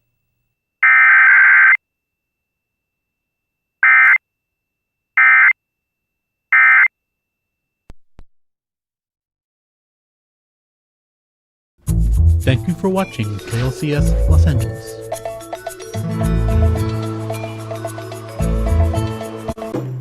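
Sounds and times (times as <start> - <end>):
digital alert data tones: 12.9 - 16.0.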